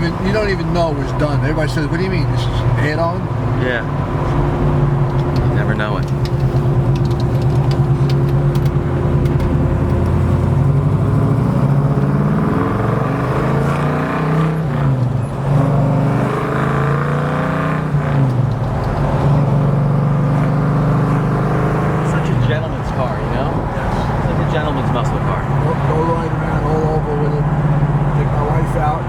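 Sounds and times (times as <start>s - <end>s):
car engine accelerating: 0.0s - 29.0s.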